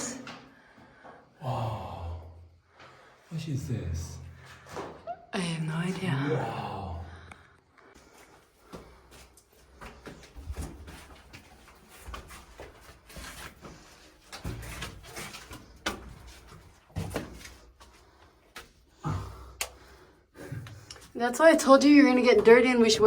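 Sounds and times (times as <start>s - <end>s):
person clambering through cave: 7.9s - 23.0s.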